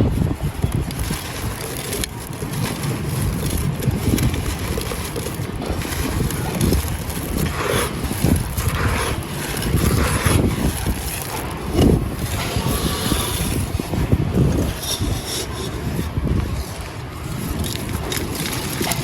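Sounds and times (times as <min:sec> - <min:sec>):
clay and sand crunching: 0:00.0 - 0:19.0.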